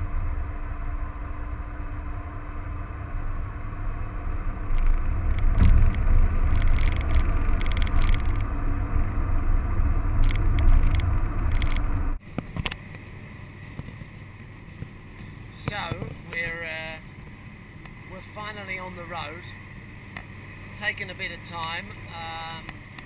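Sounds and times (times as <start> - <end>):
car engine rumbling: 0.0 - 23.0
clicks and rattles: 4.7 - 8.5, 10.2 - 12.8.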